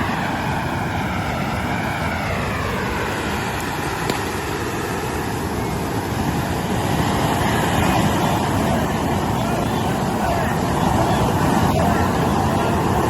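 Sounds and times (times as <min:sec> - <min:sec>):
fireworks spraying sparks roar: 0:00.0 - 0:13.0.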